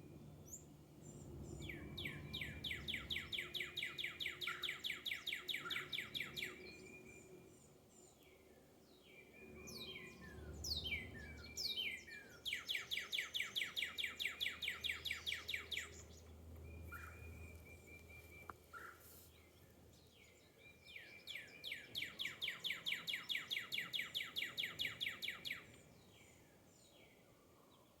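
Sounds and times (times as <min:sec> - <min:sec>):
faint low rumble: 0:00.0 - 0:03.6, 0:15.8 - 0:20.2
bird trill: 0:09.4 - 0:18.9.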